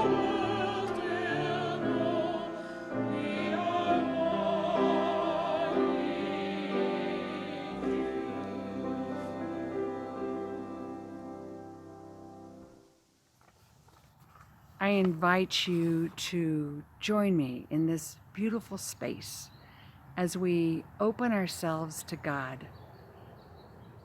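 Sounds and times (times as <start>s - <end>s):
classical singing with vibrato: 0.0s - 12.4s
sustained accompaniment: 0.0s - 13.1s.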